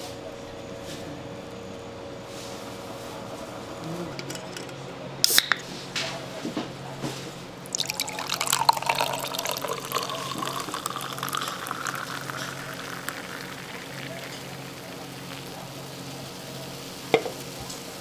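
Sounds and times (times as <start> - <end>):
liquid pouring: 7.6 - 16.2.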